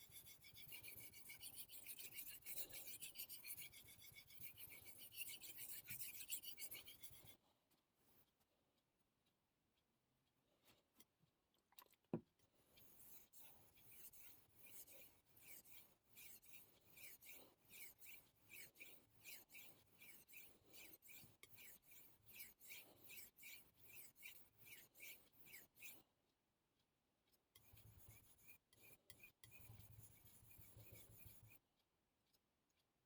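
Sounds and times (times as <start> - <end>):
knife scraping on whetstone: 0.1 - 7.3.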